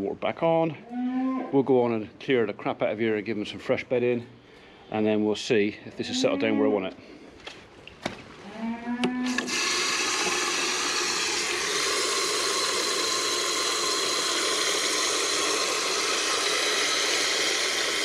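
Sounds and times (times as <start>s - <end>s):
valve clicks: 9.3s - 18.0s
water rushing through a valve: 9.3s - 18.0s.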